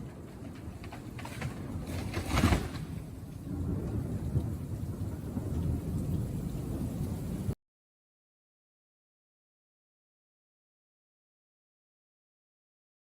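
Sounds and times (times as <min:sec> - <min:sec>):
thunderclap crack: 0:00.0 - 0:06.8
low storm rumble: 0:00.0 - 0:07.6
rain hiss: 0:01.6 - 0:07.6.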